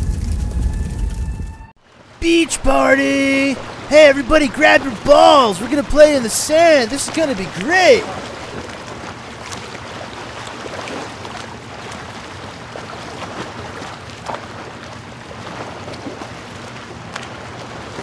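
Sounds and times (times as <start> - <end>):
wind: 0.0 - 18.0
ocean surf: 1.9 - 14.7.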